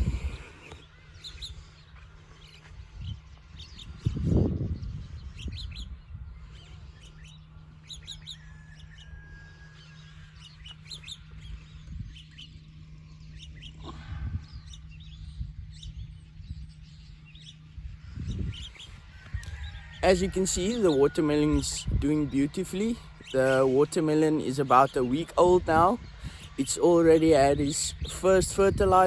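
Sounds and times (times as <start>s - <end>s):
low rumbles: 0.0s - 7.9s
small birds chirping: 0.0s - 29.0s
steady low hum: 0.0s - 29.0s.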